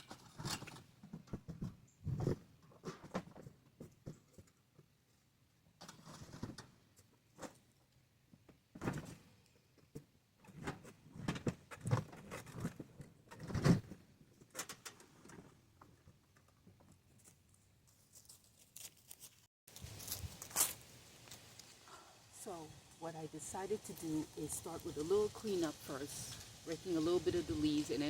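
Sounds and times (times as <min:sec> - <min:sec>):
objects knocking and thudding: 0:00.0 - 0:04.5.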